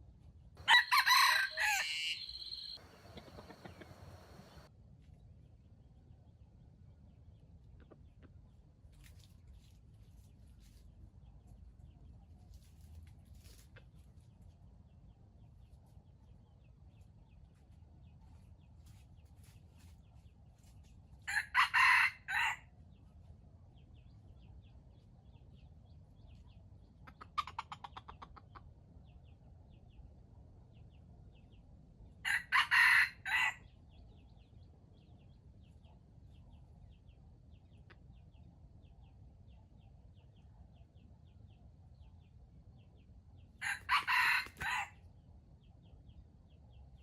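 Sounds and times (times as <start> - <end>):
rooster crowing: 0.6 - 4.7, 21.3 - 22.6, 32.3 - 33.6, 43.6 - 44.9
faint small birds chirping: 0.6 - 6.4, 7.2 - 21.4.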